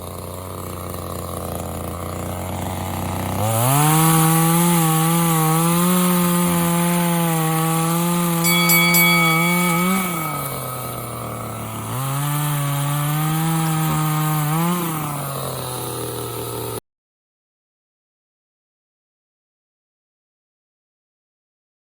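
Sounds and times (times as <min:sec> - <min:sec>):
chainsaw engine revving: 0:00.0 - 0:08.4, 0:09.2 - 0:16.8.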